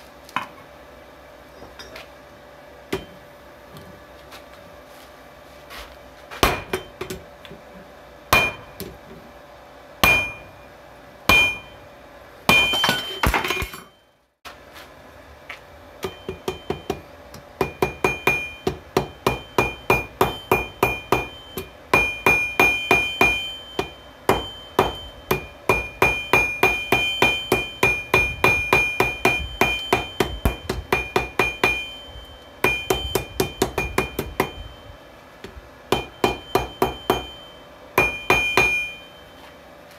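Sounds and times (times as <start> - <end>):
hammer striking anvil: 2.9 - 3.2, 6.4 - 7.2, 8.3 - 8.9, 10.0 - 10.6, 11.3 - 11.8, 12.5 - 14.0, 16.0 - 17.0, 17.6 - 34.8, 35.9 - 39.3.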